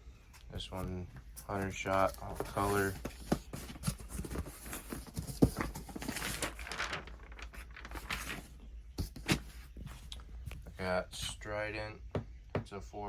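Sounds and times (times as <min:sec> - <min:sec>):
cardboard boxes knocking and scraping: 0:01.4 - 0:06.4, 0:09.0 - 0:10.0
wrapping crinkling: 0:03.7 - 0:08.6.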